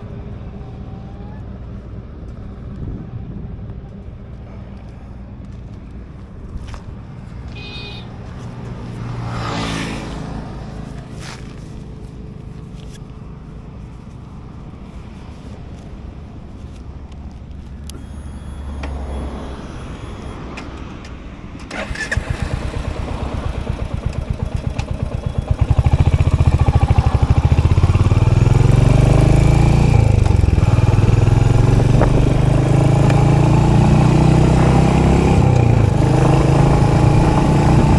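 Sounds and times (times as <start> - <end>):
motorcycle engine starting and idling: 3.8 - 37.9.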